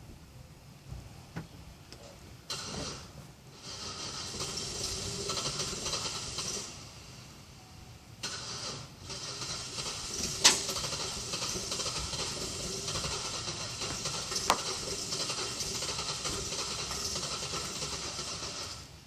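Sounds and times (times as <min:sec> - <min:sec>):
car engine starting and running: 0:02.5 - 0:07.3, 0:08.2 - 0:19.0
sharp engine cracks: 0:08.2 - 0:18.8.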